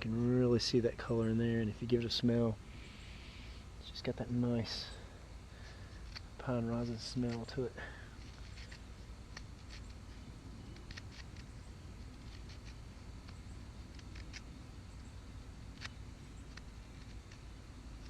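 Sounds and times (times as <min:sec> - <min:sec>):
low background noise: 0:00.0 - 0:18.0
knife scraping wood: 0:08.2 - 0:14.5.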